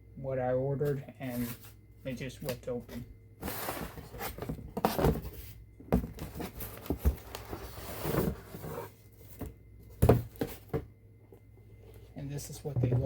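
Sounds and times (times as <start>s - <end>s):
cardboard box rustling: 3.4s - 10.8s.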